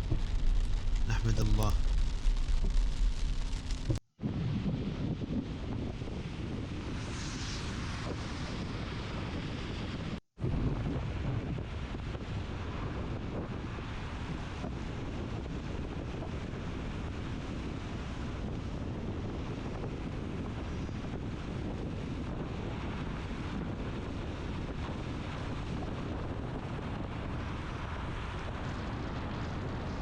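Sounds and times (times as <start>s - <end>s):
wind rumbling on microphone: 0.0s - 30.0s
heavy rain hissing: 1.1s - 1.8s.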